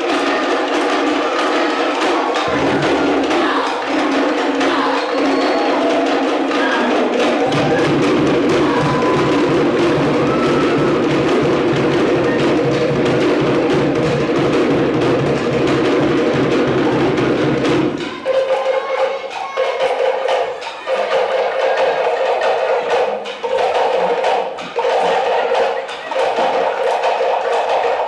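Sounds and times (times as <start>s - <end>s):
deep drum: 0.0s - 4.9s, 6.8s - 18.1s
wooden slit drums fast rhythm: 0.0s - 28.0s.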